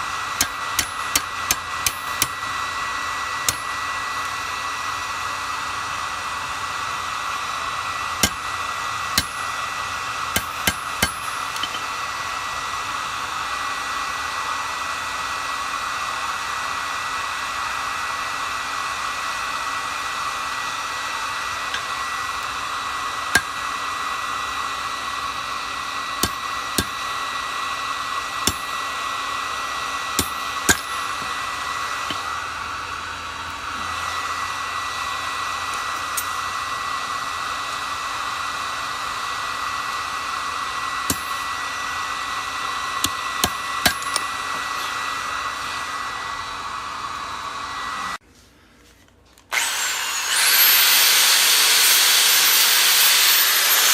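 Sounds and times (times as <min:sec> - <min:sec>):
hammer striking metal: 0:00.4 - 0:02.6, 0:08.2 - 0:08.5, 0:09.1 - 0:09.6, 0:10.3 - 0:11.9, 0:23.3 - 0:23.6, 0:26.2 - 0:27.0, 0:28.4 - 0:28.7, 0:30.2 - 0:31.4, 0:41.1 - 0:41.5, 0:43.0 - 0:44.4.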